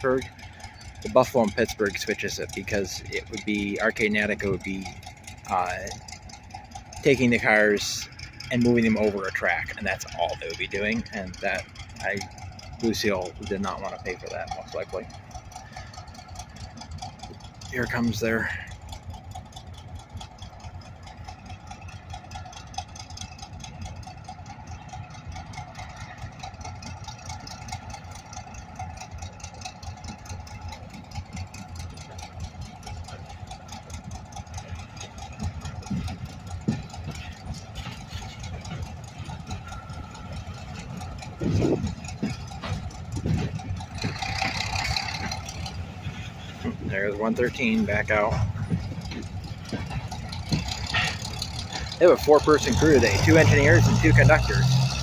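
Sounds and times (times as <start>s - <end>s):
diesel locomotive engine running: 0.0s - 55.0s
low thumps: 48.1s - 50.9s.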